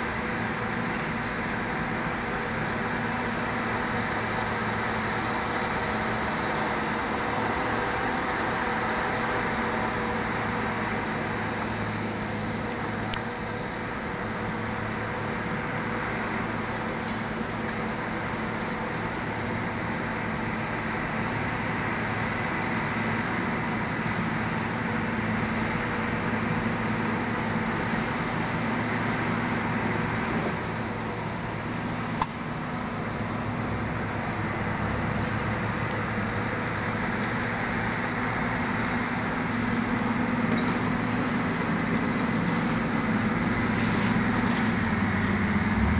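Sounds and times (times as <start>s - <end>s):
bulldozer diesel engine running: 0.0s - 45.9s.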